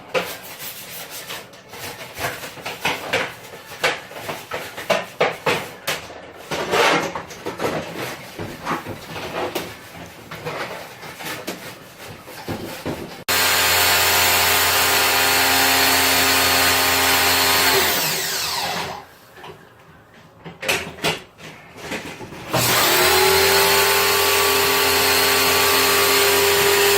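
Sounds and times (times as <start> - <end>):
hands knocking and rubbing parts: 0.0 - 13.3
electric motor running: 13.3 - 19.0, 22.6 - 26.9.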